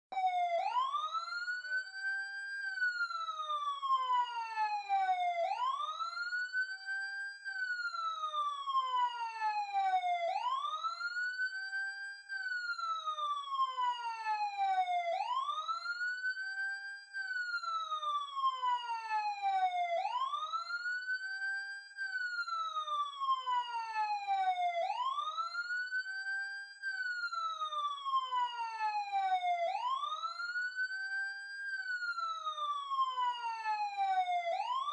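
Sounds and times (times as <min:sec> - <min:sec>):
emergency siren wailing: 0:00.1 - 0:34.9.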